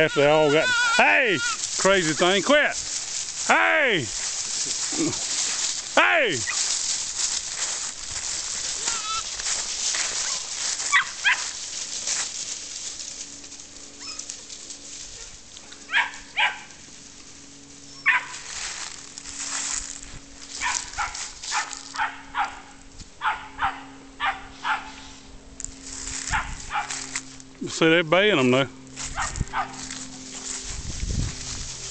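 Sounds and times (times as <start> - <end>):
puppies barking sharply: 0.0 - 2.8, 8.7 - 11.6, 15.9 - 16.8, 17.9 - 18.5, 20.6 - 25.0, 26.2 - 27.0, 29.0 - 29.9.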